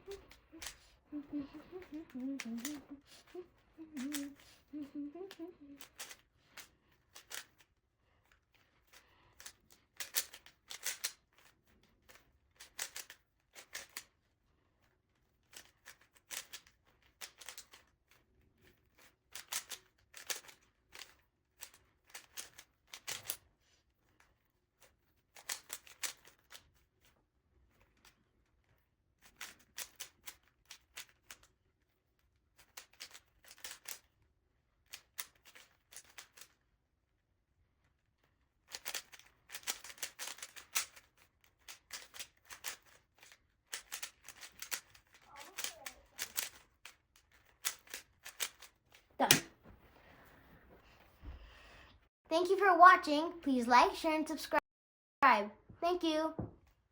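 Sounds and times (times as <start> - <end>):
plastic cube clicking: 0.0 - 14.2, 14.8 - 23.5, 24.1 - 27.1, 27.8 - 31.6, 32.6 - 34.2, 34.8 - 36.6, 38.6 - 49.5.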